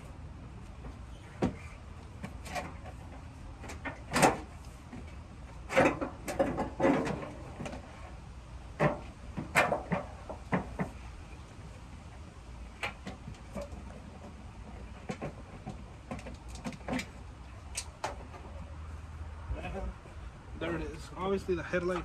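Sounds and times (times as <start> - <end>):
body parts knocking and rattling: 0.7 - 8.0, 8.7 - 11.1, 12.6 - 18.7.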